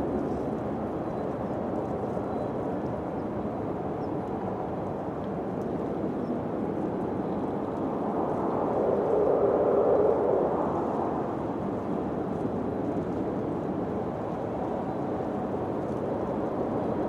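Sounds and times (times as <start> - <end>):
wind blowing: 6.1 - 17.0.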